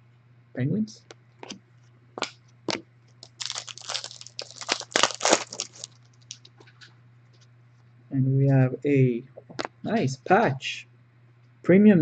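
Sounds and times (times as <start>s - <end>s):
card pack wrapper crinkling: 3.2s - 6.6s.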